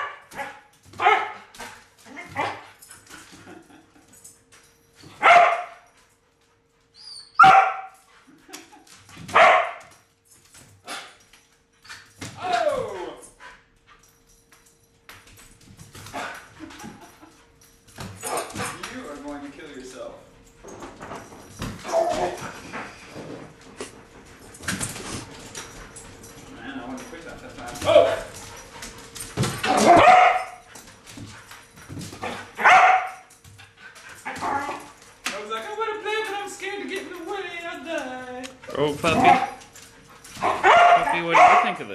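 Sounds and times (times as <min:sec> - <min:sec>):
dog barking: 0:00.0 - 0:01.5, 0:05.2 - 0:05.8, 0:07.4 - 0:08.0, 0:09.3 - 0:09.8, 0:29.7 - 0:30.6, 0:32.6 - 0:33.2, 0:40.4 - 0:41.9.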